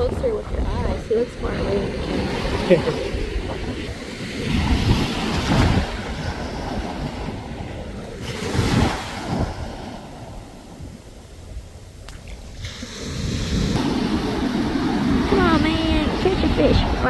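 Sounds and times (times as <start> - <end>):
ocean waves washing ashore: 0.0 - 17.0
wind rumbling on microphone: 0.0 - 17.0.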